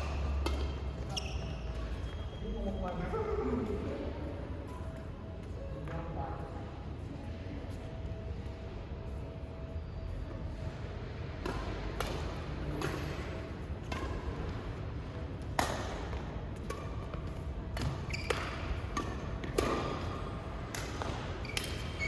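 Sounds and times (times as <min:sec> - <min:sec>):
rackets hitting shuttlecock: 0:00.0 - 0:01.1, 0:11.4 - 0:14.6, 0:15.4 - 0:22.0.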